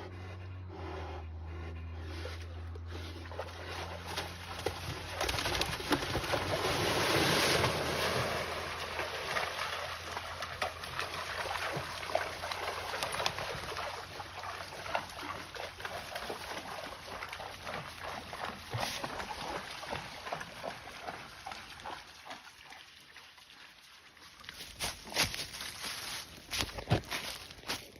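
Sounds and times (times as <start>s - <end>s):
deer scuffling and rustling: 24.4s - 27.9s.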